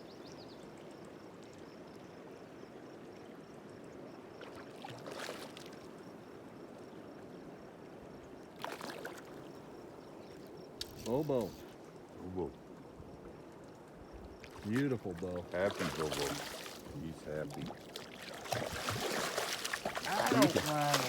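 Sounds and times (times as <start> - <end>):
water splashes: 4.3 - 5.9, 8.6 - 9.6, 14.3 - 21.0
river water flowing: 7.3 - 10.8, 11.4 - 21.0.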